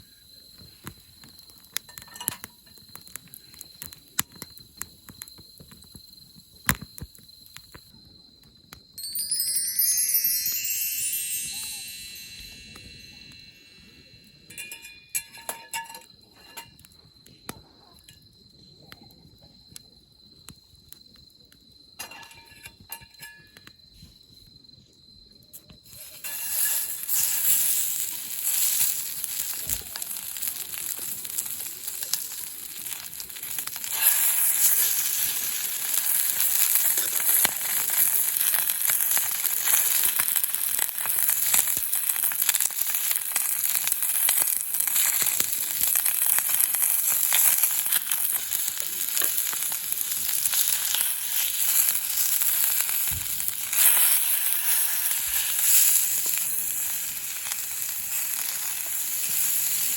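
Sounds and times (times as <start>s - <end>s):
food sizzling in a pan: 0.0s - 7.9s, 8.9s - 16.8s, 25.8s - 59.9s.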